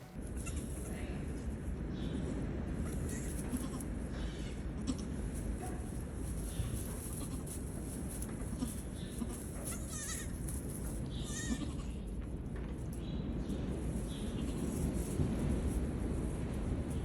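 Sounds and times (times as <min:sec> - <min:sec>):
low background noise: 0:00.0 - 0:17.0
goat kids bleating: 0:00.3 - 0:01.0, 0:02.8 - 0:05.2, 0:06.5 - 0:07.8, 0:08.4 - 0:12.1.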